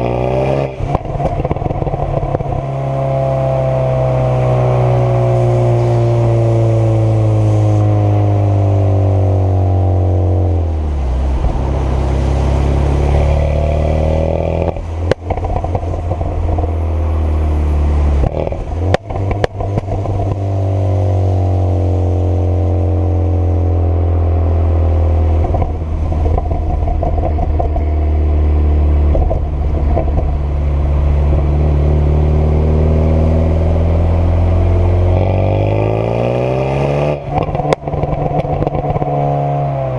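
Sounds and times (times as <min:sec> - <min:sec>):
loud car exhaust revving: 0:00.0 - 0:39.9
exhaust crackles and pops: 0:00.8 - 0:02.8, 0:14.3 - 0:20.5, 0:25.3 - 0:32.1, 0:37.2 - 0:39.9.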